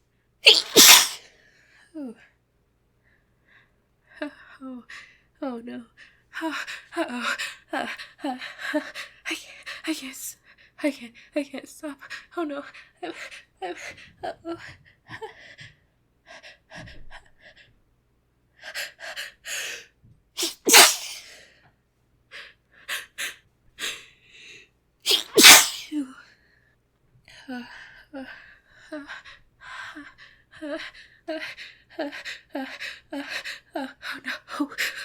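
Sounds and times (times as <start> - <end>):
woman sneezing: 0.4 - 1.3, 20.4 - 21.4, 25.1 - 26.0
woman gasping: 0.5 - 1.2, 20.4 - 21.4, 25.1 - 26.0.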